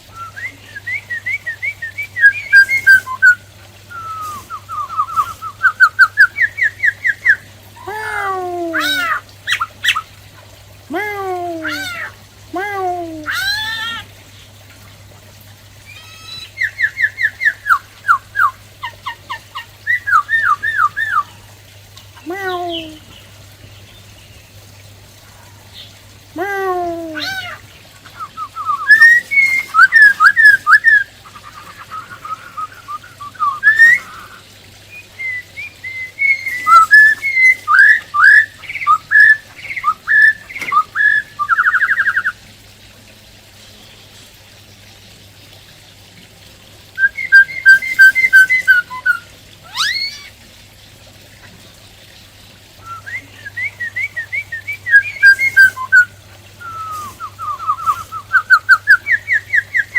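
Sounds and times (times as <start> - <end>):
bird singing whistled phrases: 0.1 - 7.4, 15.9 - 18.6, 19.8 - 21.3, 27.2 - 42.4, 47.0 - 50.3, 52.8 - 59.9.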